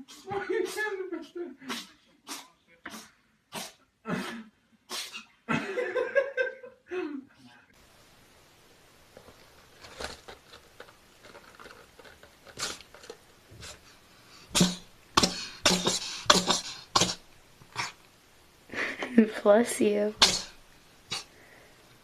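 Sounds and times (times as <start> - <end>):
cat sneezing: 1.7 - 5.3, 12.6 - 12.8, 14.5 - 18.0, 20.2 - 21.3.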